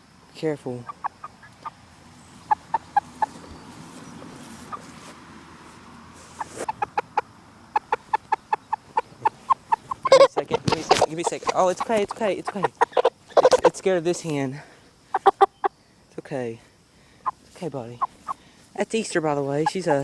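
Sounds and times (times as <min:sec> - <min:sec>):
chickens clucking: 0:00.7 - 0:15.8, 0:17.2 - 0:18.5, 0:19.2 - 0:20.0.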